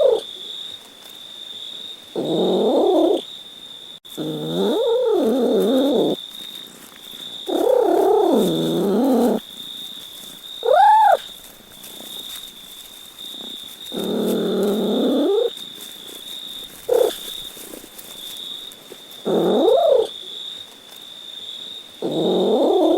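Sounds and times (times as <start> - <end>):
cat meowing: 10.6 - 11.3.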